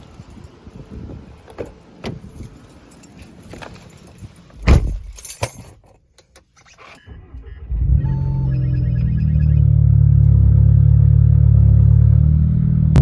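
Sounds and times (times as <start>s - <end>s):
keys jangling: 0.0s - 6.4s
loud heavy thump: 4.6s - 5.2s.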